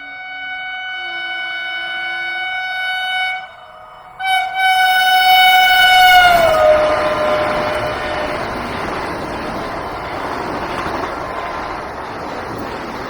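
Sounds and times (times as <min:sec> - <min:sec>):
shrill train horn blasts: 0:00.0 - 0:09.3
passing train rushing noise: 0:00.0 - 0:13.0.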